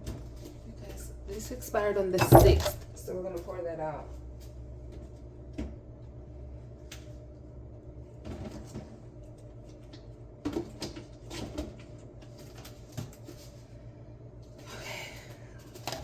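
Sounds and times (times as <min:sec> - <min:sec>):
containers knocking and clicking: 0:02.2 - 0:02.8.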